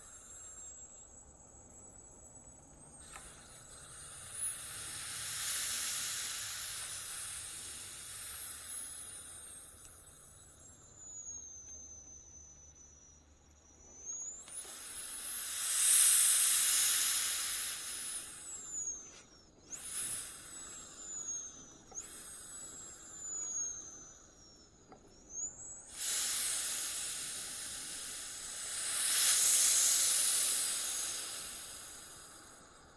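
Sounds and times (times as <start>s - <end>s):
turbo whistle: 3.0s - 13.2s, 13.8s - 32.9s
rushing hiss: 3.2s - 9.8s, 14.5s - 18.9s, 19.7s - 21.4s, 25.9s - 32.9s.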